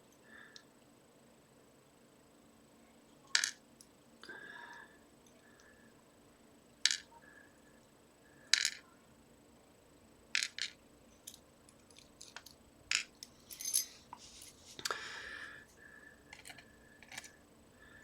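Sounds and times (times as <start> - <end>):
small metal lock parts clinking: 10.4 - 14.0, 16.3 - 17.4.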